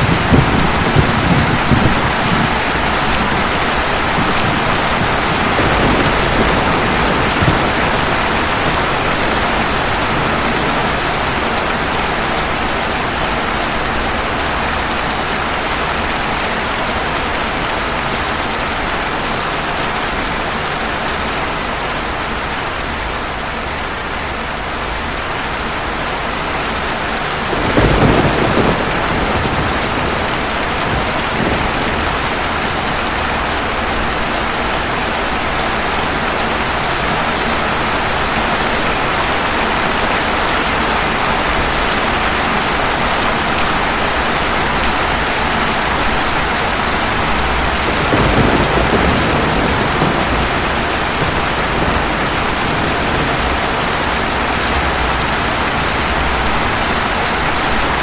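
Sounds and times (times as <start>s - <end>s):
thunderclap rumbling: 0.0s - 15.0s, 27.4s - 36.7s, 43.5s - 58.0s
heavy rain: 0.0s - 58.0s.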